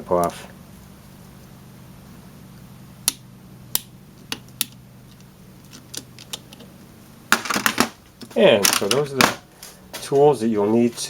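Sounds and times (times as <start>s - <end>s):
metal clamp rattling: 8.6s - 9.4s.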